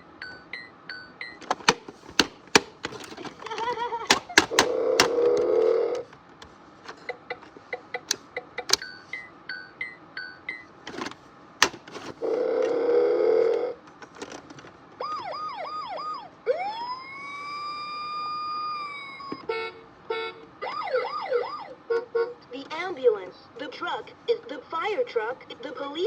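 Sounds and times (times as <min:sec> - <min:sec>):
toy button clicks: 0:01.4 - 0:06.2, 0:06.9 - 0:08.9, 0:10.9 - 0:12.2
electronic siren: 0:15.0 - 0:18.4.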